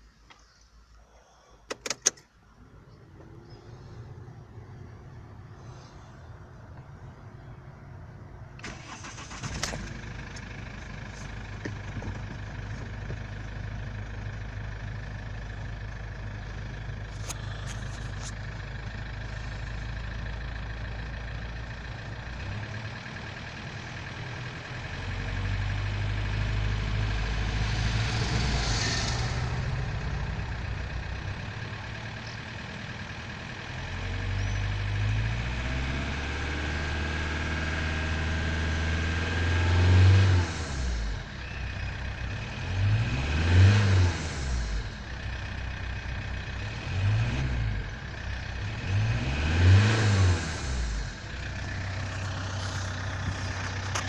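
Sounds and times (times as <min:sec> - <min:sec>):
diesel engine running: 0:01.2 - 0:54.0
sharp clicks: 0:01.7 - 0:02.4.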